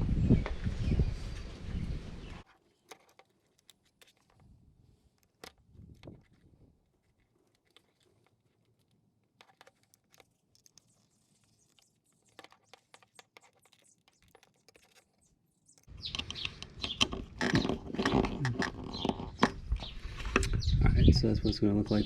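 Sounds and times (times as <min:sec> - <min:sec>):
small parts clicking and tapping: 0:02.4 - 0:19.8.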